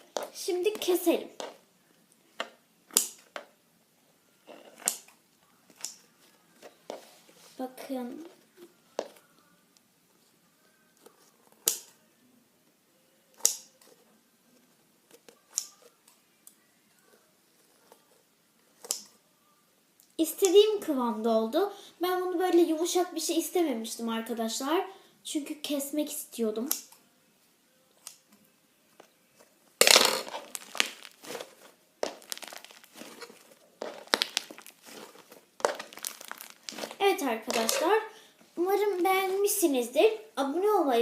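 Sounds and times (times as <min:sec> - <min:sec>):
slime squeezed by hand: 0:29.8 - 0:31.4, 0:32.0 - 0:37.0
slime crackles: 0:29.8 - 0:38.1.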